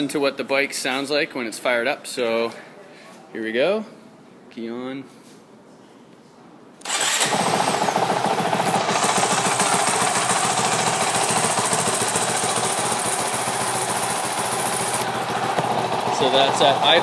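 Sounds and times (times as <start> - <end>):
motorcycle engine starting and idling: 6.8 - 17.0.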